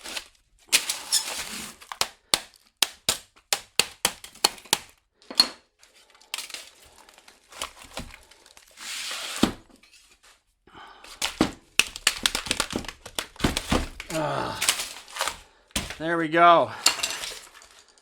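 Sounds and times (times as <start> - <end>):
rough tearing noise: 11.1 - 16.0.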